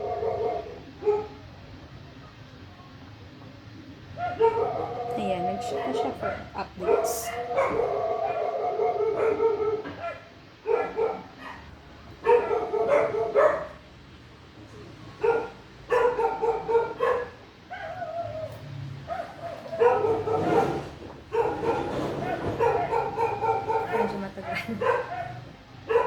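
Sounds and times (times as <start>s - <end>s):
dog yipping and whining: 4.2s - 13.8s, 15.2s - 26.0s.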